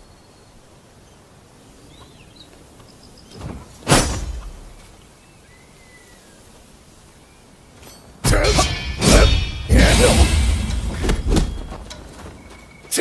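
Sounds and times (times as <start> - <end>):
swish and sharp hit effect: 8.2 - 11.4
bird chirps: 10.9 - 13.0.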